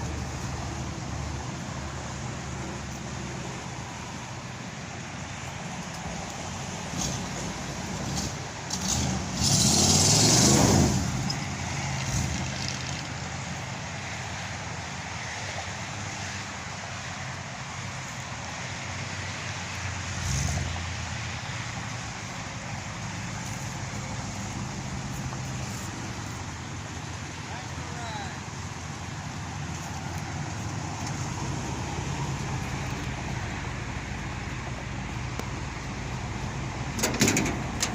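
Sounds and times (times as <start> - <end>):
road and wind noise: 0.0 - 37.9
car engine revving: 7.0 - 13.1
car engine running: 21.8 - 37.9.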